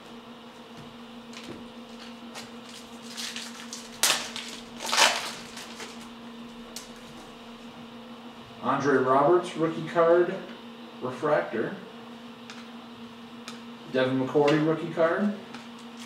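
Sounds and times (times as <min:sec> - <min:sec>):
low steady hum: 0:00.0 - 0:16.0
cards being handled: 0:01.4 - 0:06.1
foil pack crinkling: 0:01.4 - 0:06.1.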